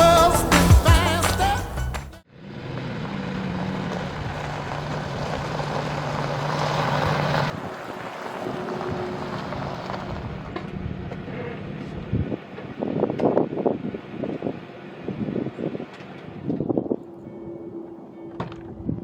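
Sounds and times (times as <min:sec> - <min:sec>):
vehicle engine humming: 0:00.0 - 0:19.0.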